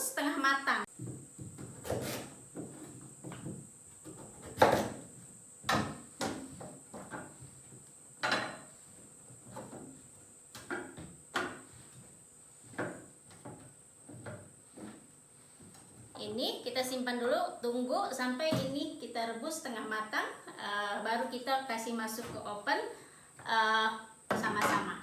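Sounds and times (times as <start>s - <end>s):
knife chopping on cutting board: 1.6s - 3.4s, 4.1s - 5.0s.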